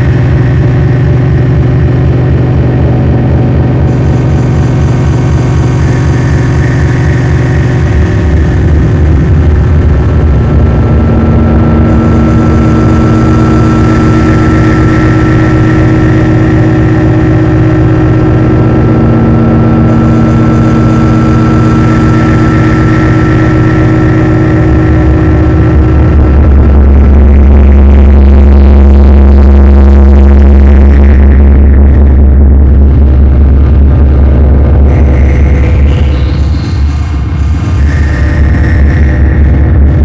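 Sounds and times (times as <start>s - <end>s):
dark ambient electronic drone: 0.0s - 40.0s.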